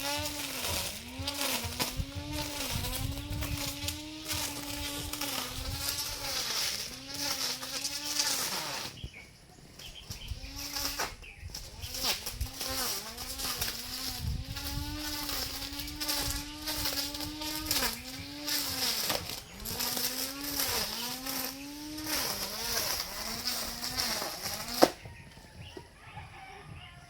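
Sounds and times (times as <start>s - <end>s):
lawn mower engine running: 0.0s - 25.0s.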